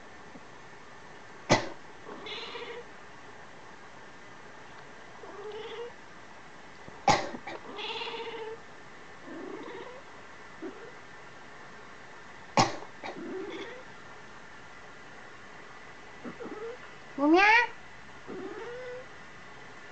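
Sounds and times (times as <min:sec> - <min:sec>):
cat meowing: 0:02.1 - 0:02.9, 0:05.2 - 0:05.9, 0:07.5 - 0:08.6, 0:13.2 - 0:13.8, 0:16.2 - 0:16.8, 0:17.4 - 0:19.0
person coughing: 0:07.1 - 0:07.5.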